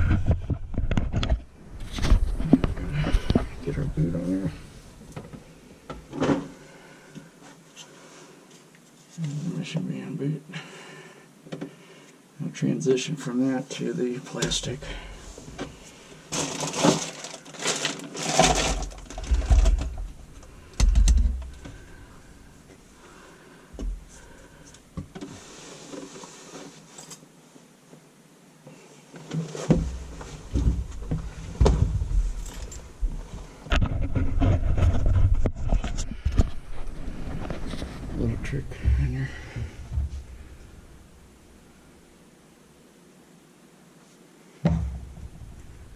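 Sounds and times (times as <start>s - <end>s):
drain parts clinking and scraping: 16.3s - 21.9s
low rumbling handling noise: 18.5s - 22.9s, 29.6s - 42.1s, 44.6s - 45.9s.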